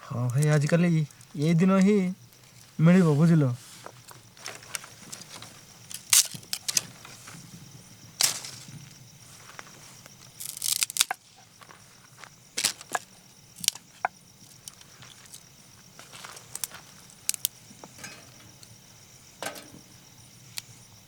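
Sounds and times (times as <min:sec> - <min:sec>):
pea pods snapping open: 0:05.9 - 0:06.8, 0:08.2 - 0:08.7, 0:10.4 - 0:11.2, 0:12.6 - 0:13.9, 0:16.3 - 0:17.6.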